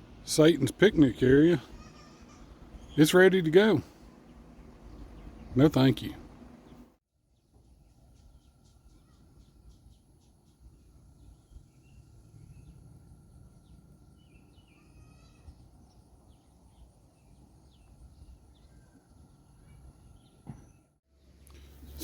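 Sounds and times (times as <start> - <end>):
low steady outdoor background: 0.0 - 22.0
bird chirps and calls: 13.6 - 20.9.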